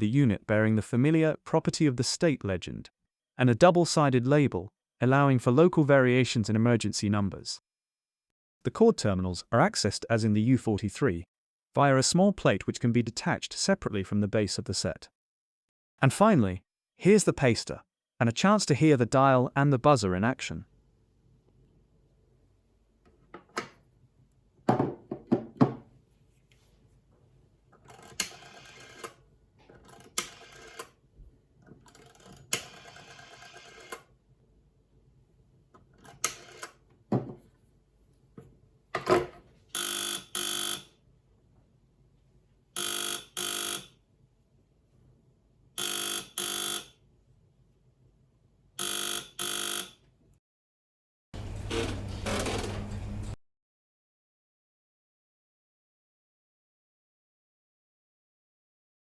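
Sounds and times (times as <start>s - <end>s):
rotary dial turning and returning: 27.9s - 29.2s, 29.8s - 31.0s, 31.8s - 34.1s, 36.0s - 36.8s, 39.8s - 40.9s, 42.8s - 43.9s, 45.8s - 46.9s, 48.8s - 49.9s
telephone buzzer short buzzes: 39.8s - 40.9s, 42.8s - 43.9s, 45.8s - 47.0s, 48.8s - 50.0s.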